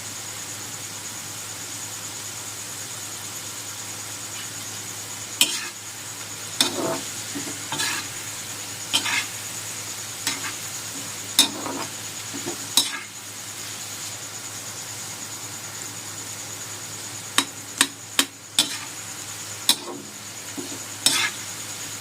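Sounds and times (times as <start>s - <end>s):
fries sizzling in hot oil: 0.0s - 22.0s
utensil scraping and knocking pan: 5.4s - 5.8s, 6.6s - 8.2s, 11.4s - 13.1s.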